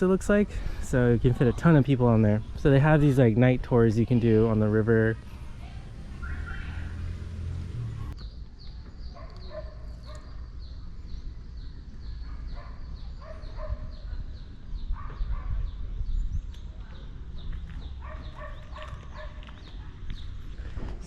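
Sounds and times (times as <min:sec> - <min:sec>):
lower animal calls: 0:05.6 - 0:07.3.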